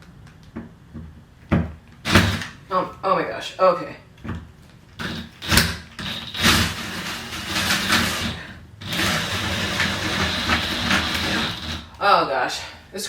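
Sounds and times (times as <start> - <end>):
electric drill boring into wood: 2.1 - 2.6, 5.0 - 12.0.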